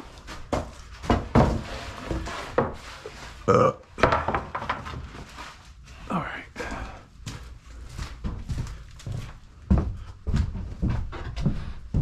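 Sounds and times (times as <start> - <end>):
building materials knocking and clattering: 0.4 - 3.0, 4.0 - 5.4.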